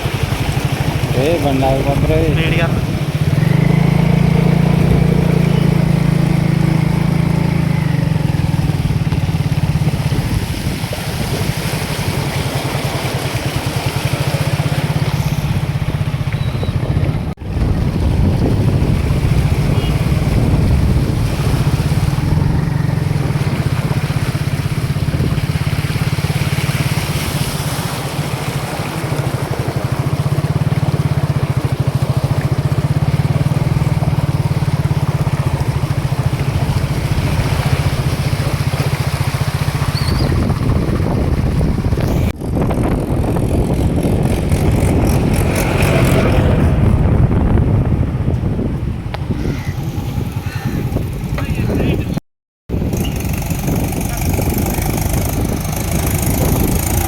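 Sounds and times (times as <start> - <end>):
small engine running: 52.8 - 57.0.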